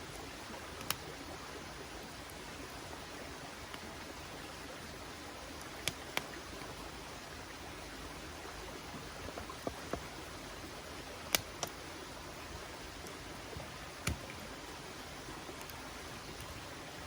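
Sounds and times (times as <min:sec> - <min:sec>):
campfire crackling and popping: 0:00.0 - 0:01.4, 0:02.0 - 0:04.9, 0:05.5 - 0:06.8, 0:08.7 - 0:16.7.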